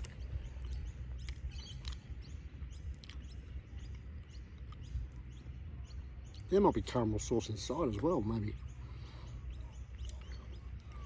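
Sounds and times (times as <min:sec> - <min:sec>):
person chewing: 0:00.0 - 0:02.1, 0:02.9 - 0:03.3.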